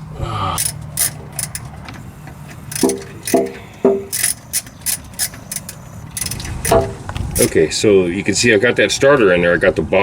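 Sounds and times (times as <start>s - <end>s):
ratchet wrench clicking: 0.6s - 7.6s
short squeaks: 0.6s - 7.6s.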